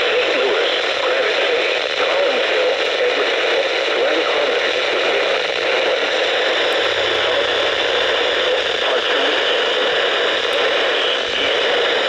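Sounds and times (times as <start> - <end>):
broadcast voice: 0.0 - 12.0
radio static hiss: 0.0 - 12.0.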